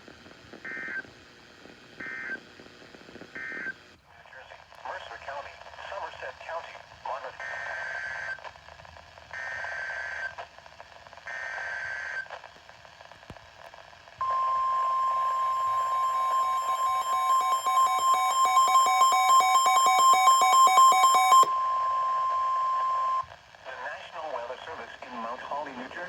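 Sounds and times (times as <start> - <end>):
steady warning alarm tone: 14.2 - 23.2
rapid pulsing alert beeps: 15.3 - 21.5.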